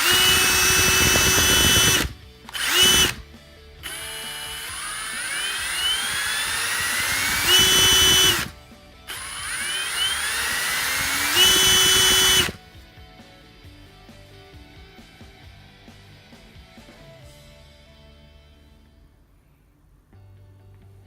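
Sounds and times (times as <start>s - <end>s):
electric impact drill whining: 0.0s - 12.6s.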